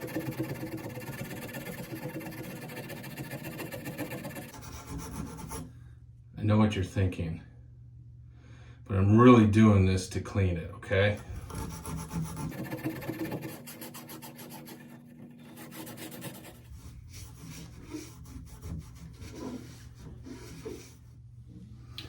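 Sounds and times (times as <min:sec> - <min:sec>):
scouring pad scrubbing metal: 0:00.0 - 0:04.5, 0:11.2 - 0:21.0.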